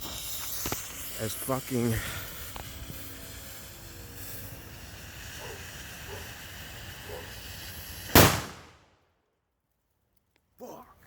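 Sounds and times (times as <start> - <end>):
fuse hissing: 0.0 - 8.6
firecracker bang: 1.8 - 8.9.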